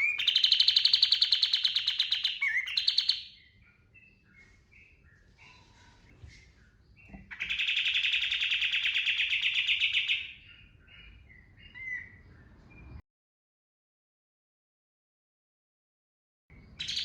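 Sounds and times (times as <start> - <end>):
bird fast trill: 0.0 - 4.2, 7.3 - 12.2
songbird chirping: 0.0 - 13.0, 16.5 - 17.0.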